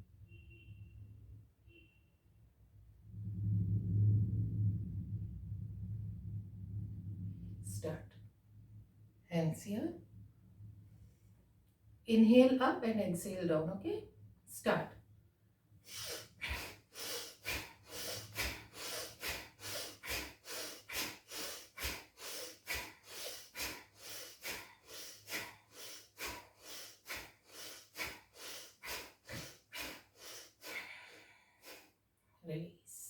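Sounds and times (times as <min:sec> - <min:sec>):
rapid forceful breathing: 0:15.8 - 0:32.0.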